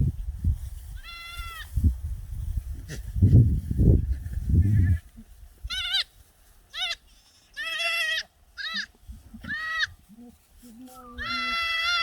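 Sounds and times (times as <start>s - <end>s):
goats bleating: 6.7s - 10.2s, 10.9s - 12.0s.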